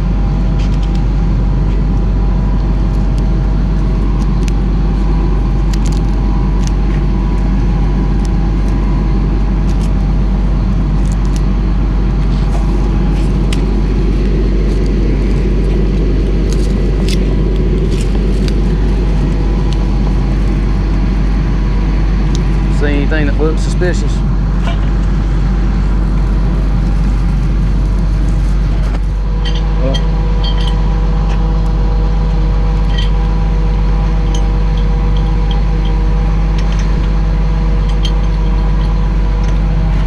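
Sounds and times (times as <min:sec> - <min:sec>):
vehicle engine humming: 0:00.0 - 0:40.0.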